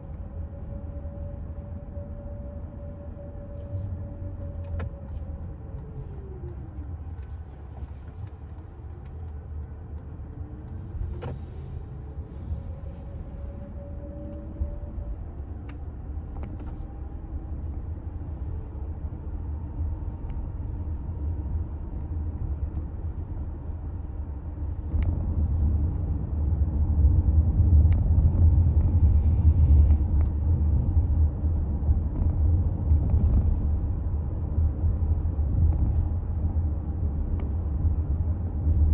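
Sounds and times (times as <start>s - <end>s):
faint gliding whine: 0.0s - 24.8s
low road rumble: 0.0s - 38.9s.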